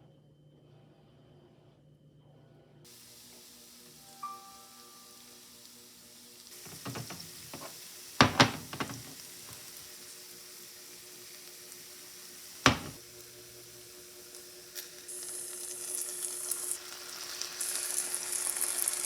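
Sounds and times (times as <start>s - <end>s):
faint frying sizzle: 2.9s - 19.0s
utensils and cookware clattering: 6.7s - 9.2s, 12.7s - 13.0s.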